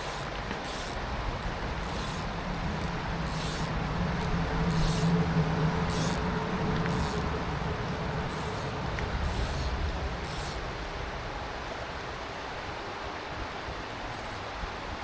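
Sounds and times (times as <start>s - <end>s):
stream water rushing: 0.0s - 15.0s
passing vehicle hum: 0.2s - 11.7s.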